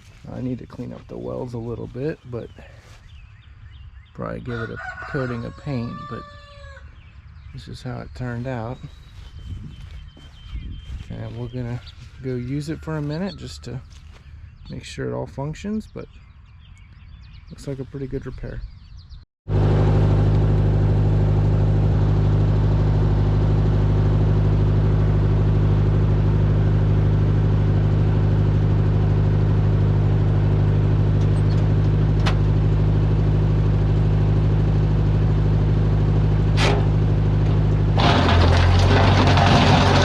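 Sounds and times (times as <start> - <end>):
tractor engine running: 19.5 - 40.0.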